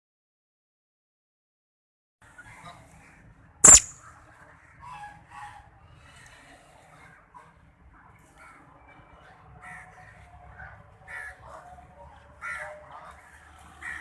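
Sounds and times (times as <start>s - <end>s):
birds calling: 3.6s - 4.0s.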